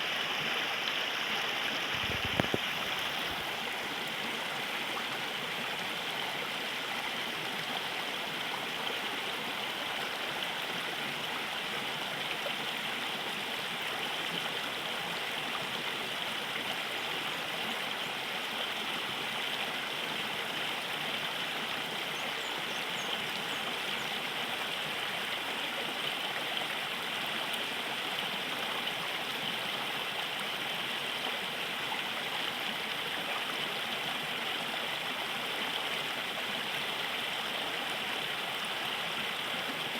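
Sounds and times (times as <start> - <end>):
river water rushing and gurgling: 0.0 - 23.6.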